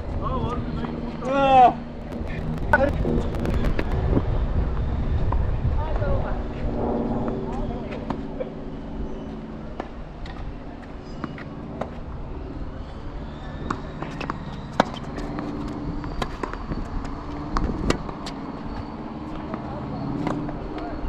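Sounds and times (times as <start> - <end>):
wind on microphone: 1.9 - 9.2.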